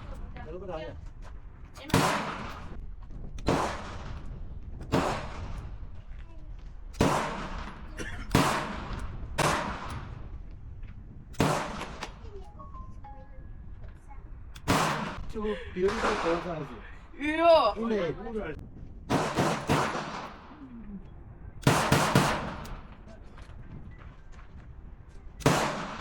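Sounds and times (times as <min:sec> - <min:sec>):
gunshots with echo: 0:01.8 - 0:02.8, 0:03.4 - 0:05.8, 0:06.9 - 0:10.3, 0:11.3 - 0:12.2, 0:14.6 - 0:17.0, 0:19.1 - 0:20.8, 0:21.6 - 0:23.2, 0:25.4 - 0:26.0.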